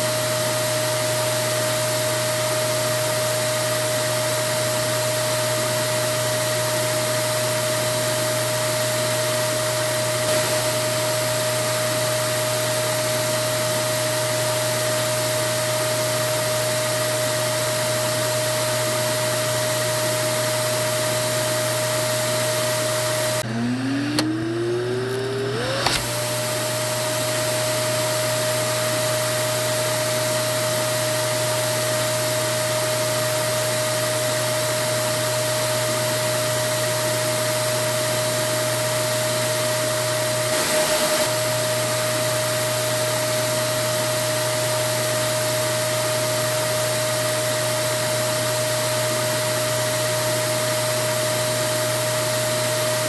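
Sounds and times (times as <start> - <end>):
vacuum cleaner motor whine: 0.0 - 53.0.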